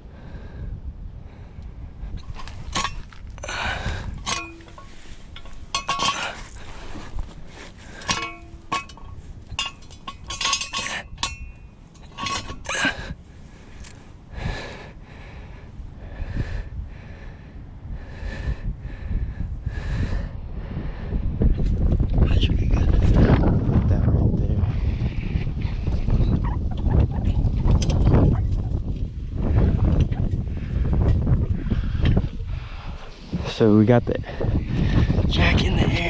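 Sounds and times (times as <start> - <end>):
wind rumble on microphone: 0.0 - 36.0
metal tools clanking: 2.2 - 14.0.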